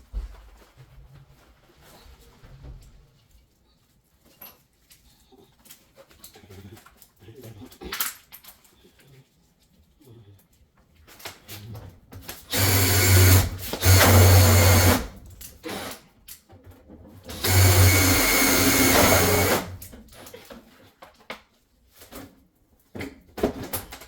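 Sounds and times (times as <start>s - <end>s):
power drill driving screws: 12.5s - 16.0s, 17.3s - 19.9s.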